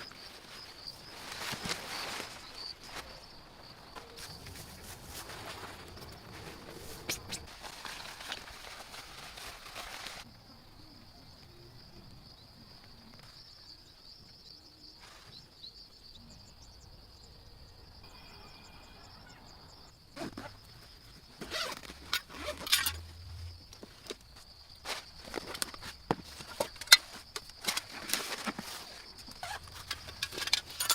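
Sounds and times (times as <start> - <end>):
crickets trilling: 0.0 - 30.9
rustling: 0.4 - 3.3, 3.9 - 10.2, 20.2 - 30.9.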